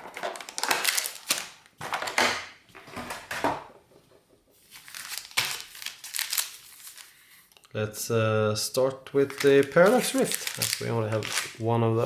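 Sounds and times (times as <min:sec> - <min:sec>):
foil wrappers crinkling: 0:00.0 - 0:01.7, 0:04.6 - 0:07.3, 0:09.2 - 0:11.8.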